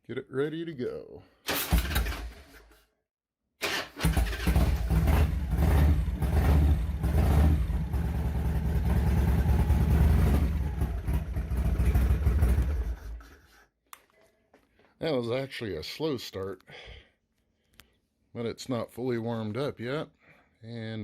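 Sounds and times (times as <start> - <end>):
motorcycle engine starting: 1.5 - 2.8, 3.6 - 13.4
motorcycle engine low rumble: 4.2 - 13.3.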